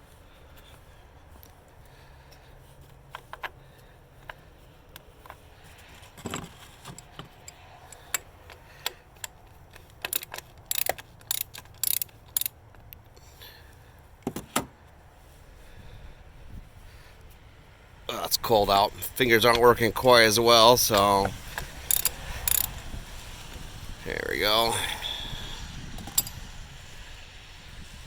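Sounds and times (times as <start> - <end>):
metal tools clinking: 5.2 - 12.6, 19.1 - 22.7, 26.0 - 26.4.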